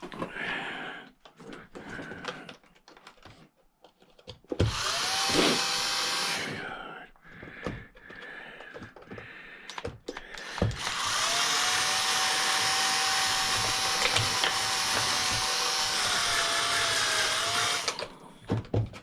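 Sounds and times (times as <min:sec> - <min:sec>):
handling clicks and knocks: 0:01.2 - 0:04.7, 0:17.9 - 0:19.0
power drill whining: 0:04.6 - 0:06.6, 0:10.2 - 0:18.3.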